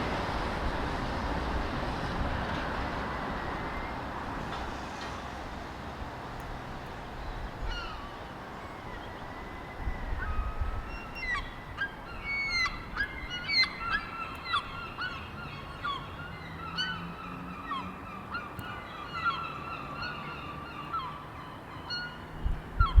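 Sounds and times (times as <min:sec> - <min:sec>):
seagulls calling: 0:07.2 - 0:23.0.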